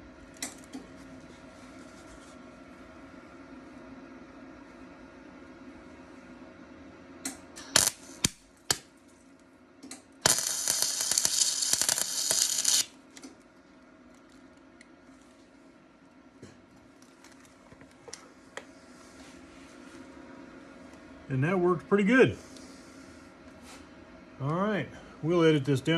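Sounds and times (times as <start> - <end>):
welder crackling: 7.6 - 8.9, 9.8 - 13.0.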